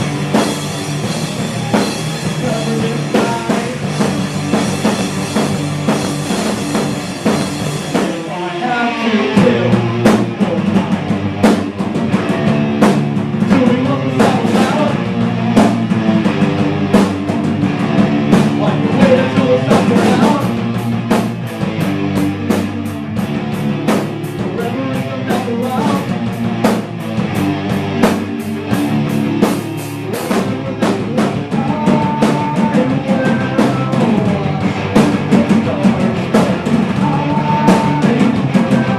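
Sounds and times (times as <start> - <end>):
drum kit beating: 0.0 - 38.9
guitar: 0.0 - 38.9
rock band playing: 0.0 - 38.9
person singing: 1.5 - 4.1, 7.9 - 11.1, 13.4 - 15.6, 18.6 - 20.7, 24.4 - 26.3, 29.6 - 38.9.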